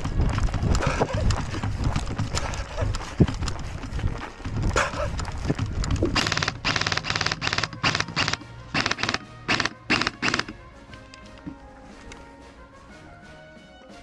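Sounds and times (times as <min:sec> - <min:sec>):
airsoft rifle full-auto bursts: 0:06.2 - 0:10.6.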